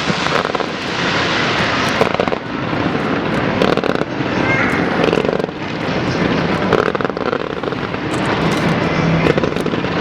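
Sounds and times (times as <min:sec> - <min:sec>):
fireworks popping and crackling: 0:00.0 - 0:10.0.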